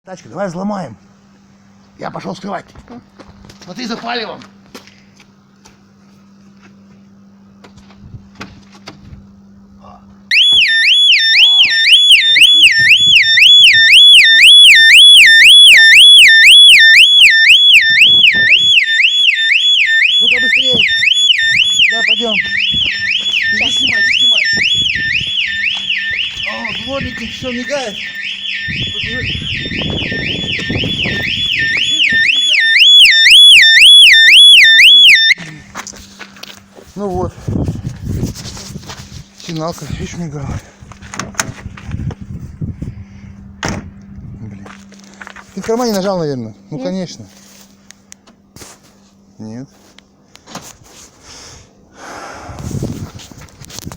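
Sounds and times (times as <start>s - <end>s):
car alarm siren wailing: 10.3s - 35.4s.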